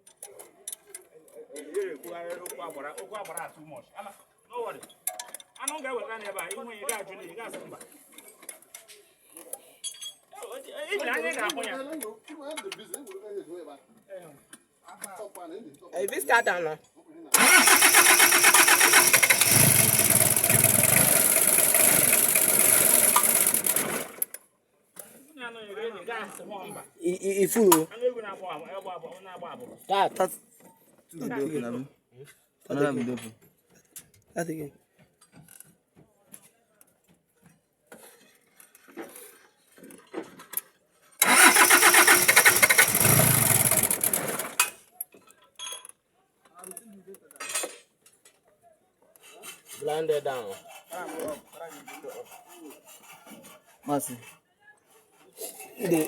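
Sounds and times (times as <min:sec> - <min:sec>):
diesel engine cranking and starting: 0:17.4 - 0:24.4, 0:41.2 - 0:44.8.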